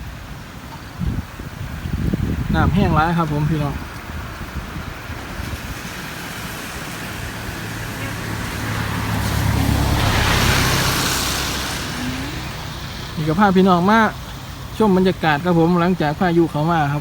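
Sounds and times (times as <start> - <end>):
vehicle driving past: 5.4 - 15.5.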